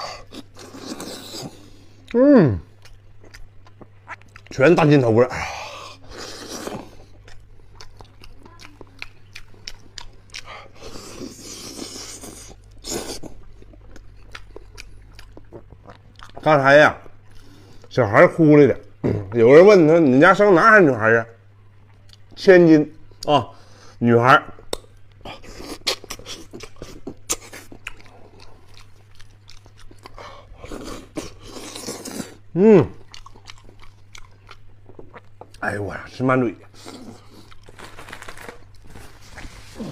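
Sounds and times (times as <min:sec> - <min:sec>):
mouth chewing wet smacks: 0:02.8 - 0:04.9, 0:06.1 - 0:10.6, 0:12.0 - 0:17.9, 0:24.5 - 0:35.6.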